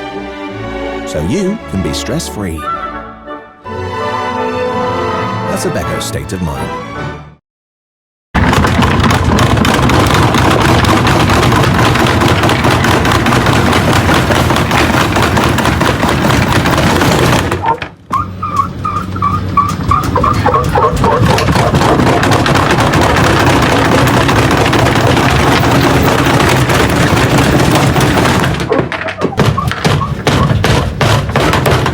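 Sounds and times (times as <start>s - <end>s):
washing machine spinning: 8.4s - 28.7s.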